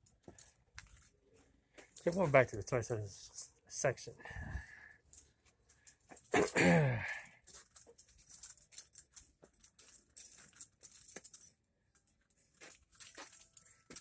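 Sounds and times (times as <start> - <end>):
small objects clicking and rattling: 7.2 - 14.0.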